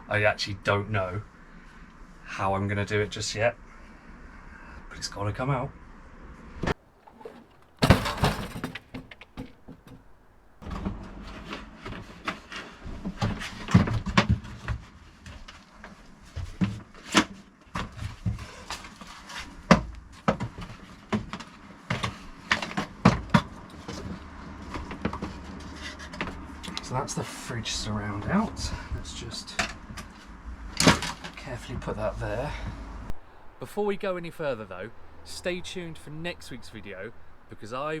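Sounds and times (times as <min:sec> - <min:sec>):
knocks clunks and scraping: 0:06.5 - 0:38.0
loud clatter: 0:06.8 - 0:10.2.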